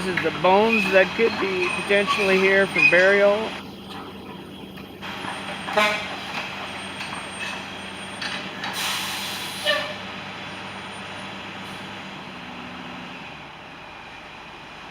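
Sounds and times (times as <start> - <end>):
excavator diesel engine running: 0.0 - 14.9
loud hiss: 8.6 - 9.8.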